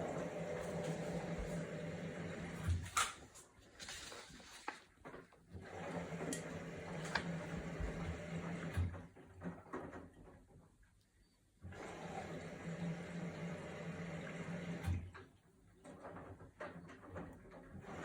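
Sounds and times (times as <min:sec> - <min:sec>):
washing machine humming: 0:00.0 - 0:03.1, 0:05.5 - 0:10.8, 0:11.6 - 0:18.0.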